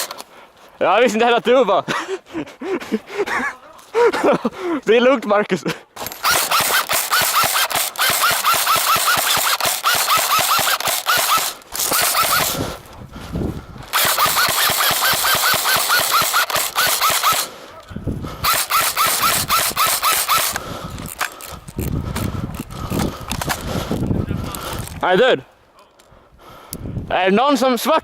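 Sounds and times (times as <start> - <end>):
airsoft guns firing full auto: 6.0 - 12.6, 13.9 - 17.6, 18.4 - 20.6.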